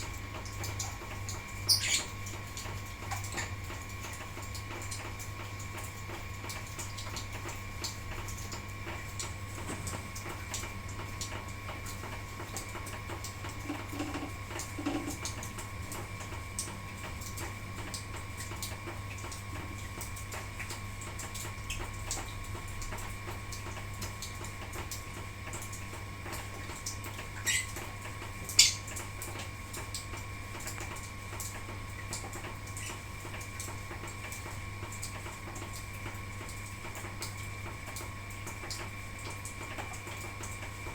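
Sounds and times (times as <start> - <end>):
birds ticking and tapping: 0.3 - 4.8, 27.2 - 29.4, 32.1 - 33.4
sharp high bird chirps: 1.7 - 2.1.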